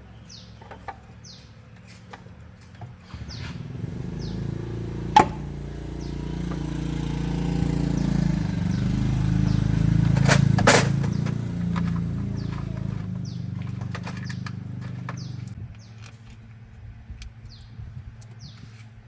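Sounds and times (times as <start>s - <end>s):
machine motor running: 3.1s - 15.6s.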